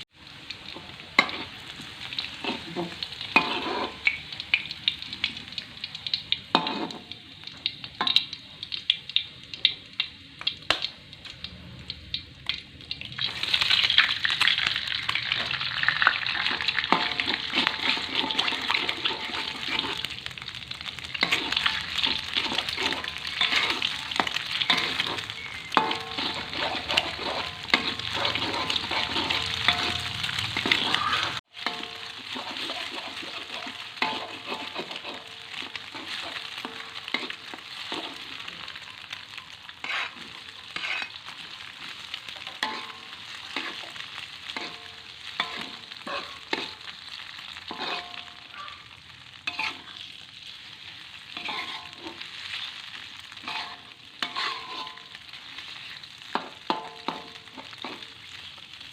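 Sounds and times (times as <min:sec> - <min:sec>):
oil sizzling in a frying pan: 0:00.0 - 0:58.9.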